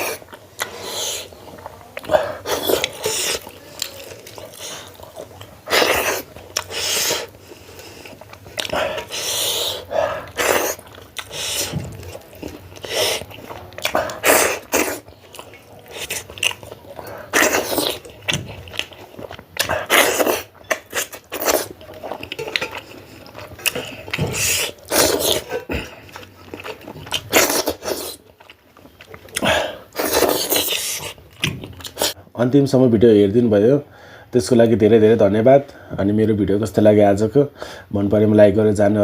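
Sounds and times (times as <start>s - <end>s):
wet chewing and mouth smacks: 0.0s - 32.2s.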